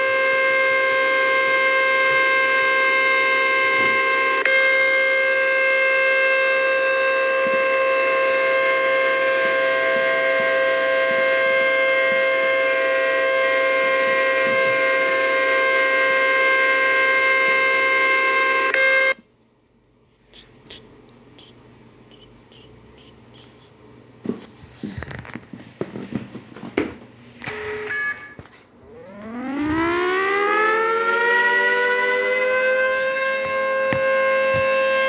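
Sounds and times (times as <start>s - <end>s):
tornado warning siren: 0.0s - 19.2s, 27.5s - 35.0s.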